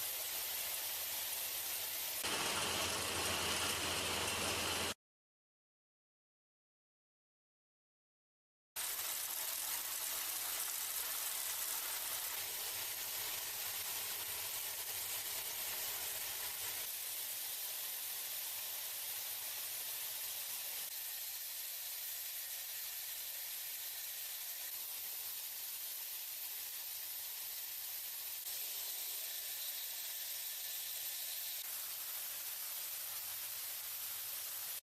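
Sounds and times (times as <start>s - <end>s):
machinery hissing: 2.2s - 5.0s.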